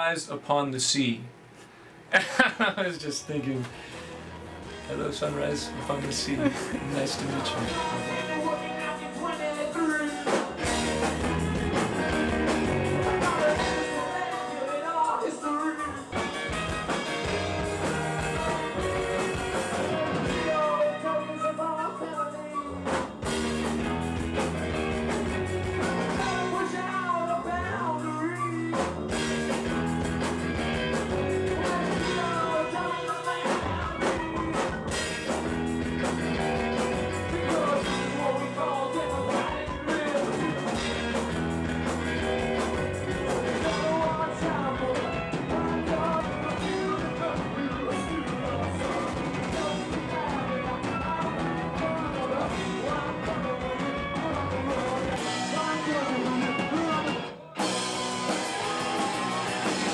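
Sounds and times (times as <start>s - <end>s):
rock band with guitar: 3.5s - 59.9s
person singing: 4.8s - 10.5s, 12.7s - 16.4s, 17.2s - 22.8s, 25.8s - 28.9s, 31.2s - 34.8s, 36.3s - 41.2s, 42.1s - 59.9s.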